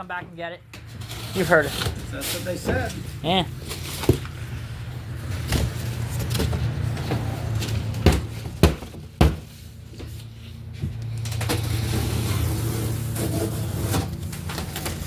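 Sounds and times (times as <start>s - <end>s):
packaging knocking and thudding: 5.4s - 9.5s.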